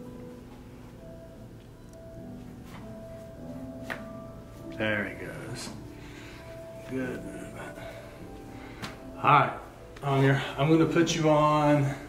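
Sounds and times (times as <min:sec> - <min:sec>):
soft background music: 0:00.0 - 0:12.0.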